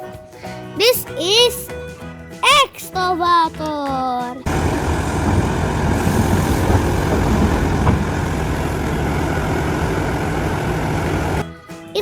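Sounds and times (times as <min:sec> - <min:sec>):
diesel engine idling: 0:04.5 - 0:11.4.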